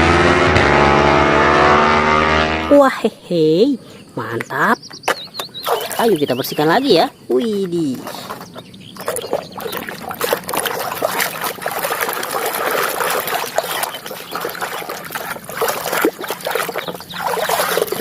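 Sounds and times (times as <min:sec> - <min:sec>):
water splashing over plastic toy: 0:05.4 - 0:18.0.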